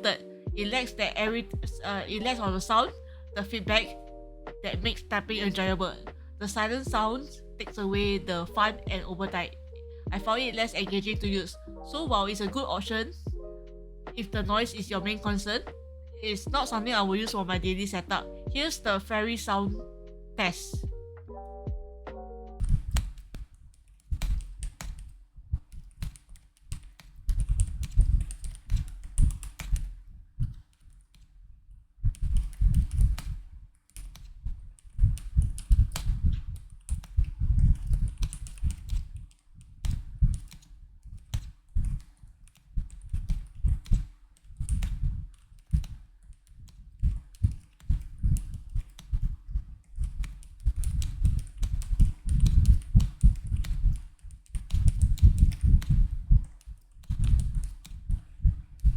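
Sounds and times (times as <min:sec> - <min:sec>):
muted keyboard keystrokes: 0:22.6 - 0:31.2, 0:32.1 - 0:49.2, 0:50.0 - 0:58.0.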